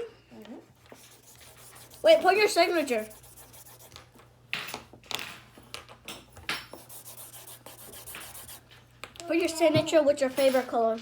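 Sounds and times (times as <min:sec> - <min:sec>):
marker rubbing across paper: 0:00.9 - 0:04.0, 0:06.8 - 0:08.6.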